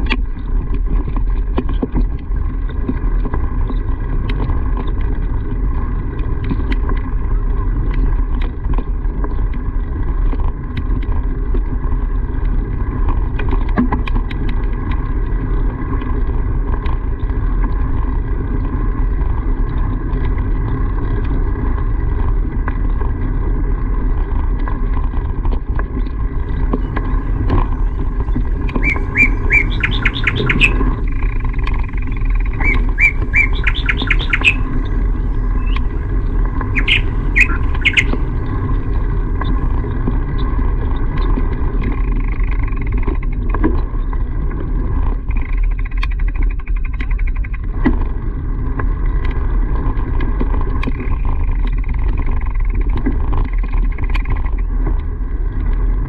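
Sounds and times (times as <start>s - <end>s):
steady low rumble: 0.0s - 56.0s
bird chirping: 26.5s - 39.7s.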